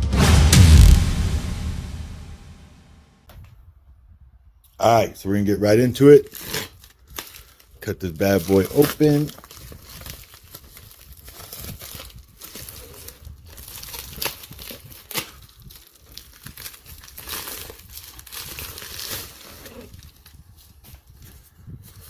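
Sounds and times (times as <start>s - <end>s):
package packaging tearing and crinkling: 5.6s - 22.0s.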